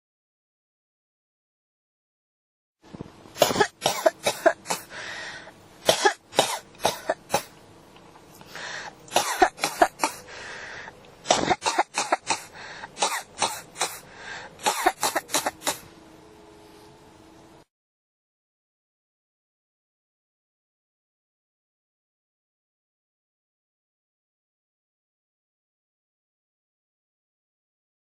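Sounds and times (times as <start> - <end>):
person coughing: 3.4 - 4.9, 5.9 - 7.5, 9.1 - 10.2, 11.3 - 14.0, 14.6 - 15.9
person breathing in: 4.8 - 5.6, 8.4 - 9.0, 10.1 - 11.0, 12.4 - 13.0, 13.8 - 14.6.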